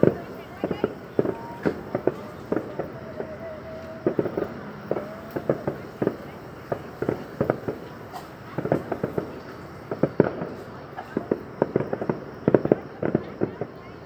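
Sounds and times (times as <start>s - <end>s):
fireworks shells bursting: 0.0s - 14.0s.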